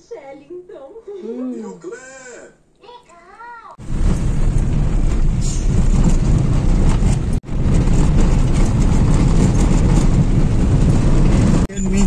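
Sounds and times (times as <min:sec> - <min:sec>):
vehicle engine and road noise: 0:03.8 - 0:12.0.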